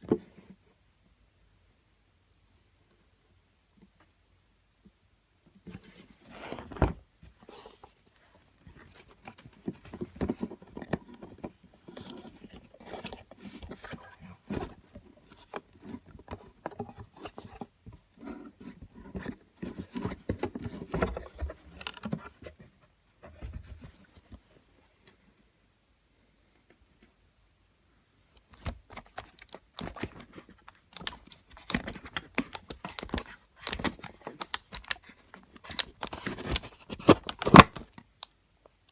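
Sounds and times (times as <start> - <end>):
packaging scraping and rustling: 28.6 - 38.0.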